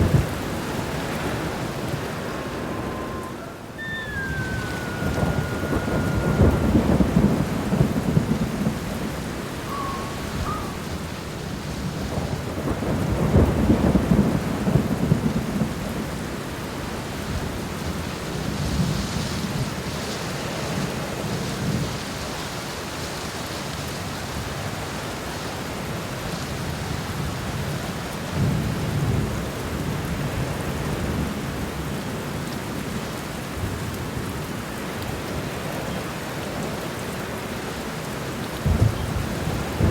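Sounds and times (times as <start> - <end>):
thunder rolling: 0.0 - 16.1, 38.6 - 39.9
heavy rain: 0.0 - 39.9.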